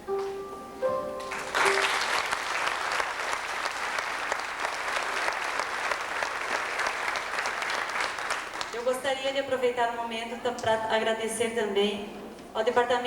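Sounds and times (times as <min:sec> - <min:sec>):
soft background music: 0:00.0 - 0:01.8
audience applauding: 0:01.2 - 0:08.8.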